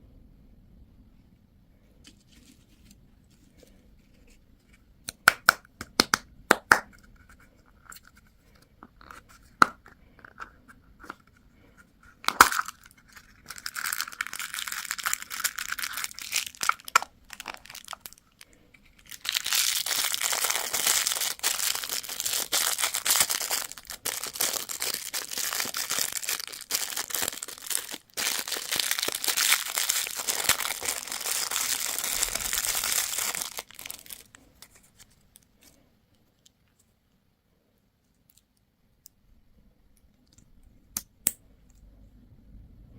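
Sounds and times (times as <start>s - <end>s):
packaging crinkling and tearing: 12.2s - 35.4s.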